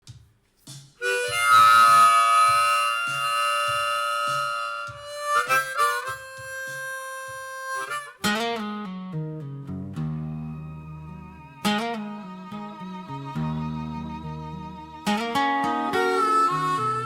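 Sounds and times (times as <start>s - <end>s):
harmonica playing held notes: 1.0s - 8.3s, 10.4s - 17.0s
steady low beat: 10.4s - 17.0s.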